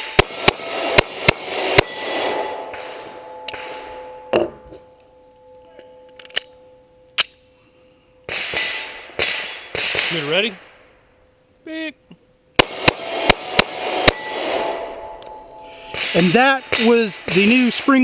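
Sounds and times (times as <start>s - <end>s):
pistol shots: 0.0s - 4.1s, 8.3s - 10.7s, 12.6s - 15.2s, 15.9s - 18.0s
steel plates ringing: 0.0s - 9.8s, 13.0s - 18.0s.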